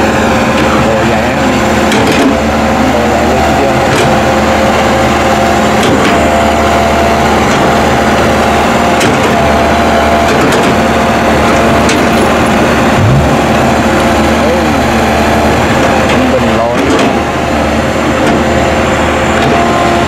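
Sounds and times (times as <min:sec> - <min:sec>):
excavator diesel engine running: 0:00.0 - 0:20.0
sharp knocks and clanks: 0:01.8 - 0:02.4, 0:12.9 - 0:14.5.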